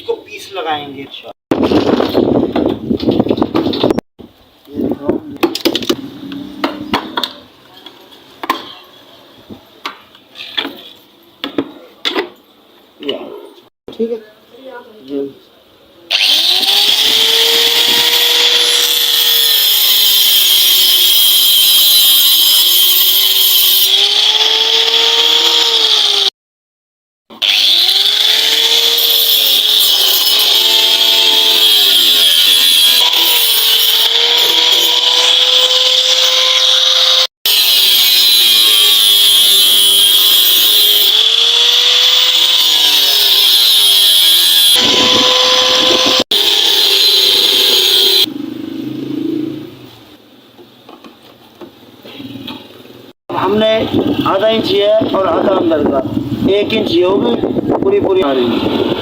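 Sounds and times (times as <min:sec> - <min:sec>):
power tool grinding sheet metal: 0:16.1 - 0:26.3, 0:27.3 - 0:48.3, 0:58.1 - 0:59.0.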